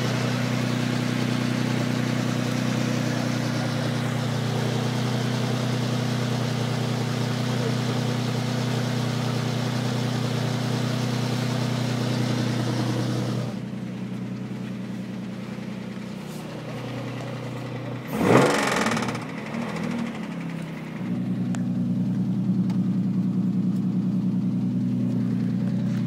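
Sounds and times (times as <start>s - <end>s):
car engine idling and revving: 0.0s - 26.0s
engine tapping: 0.0s - 26.0s.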